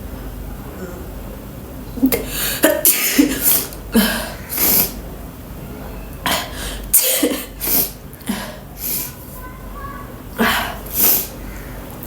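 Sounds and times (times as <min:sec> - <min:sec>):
woman sneezing and coughing: 0:02.0 - 0:05.0, 0:06.3 - 0:09.1.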